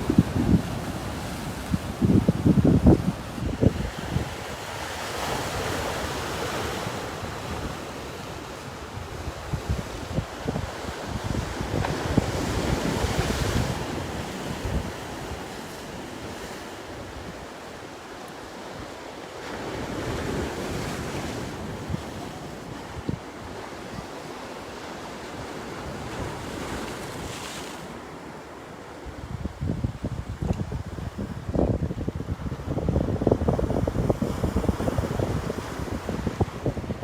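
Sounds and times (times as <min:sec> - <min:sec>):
wind gusting on microphone: 0:00.0 - 0:17.4, 0:29.0 - 0:37.0
waves washing onto shore: 0:00.0 - 0:37.0.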